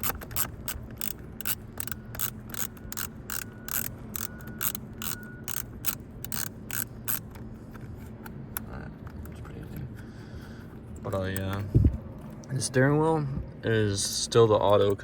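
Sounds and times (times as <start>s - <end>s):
ratchet wrench clicking: 0.0s - 7.5s.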